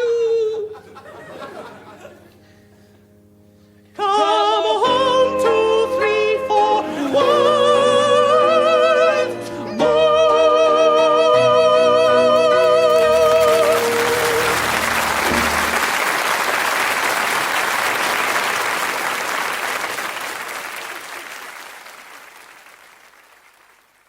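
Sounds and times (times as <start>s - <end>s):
musical accompaniment: 3.5s - 17.4s
audience applause: 12.6s - 24.0s.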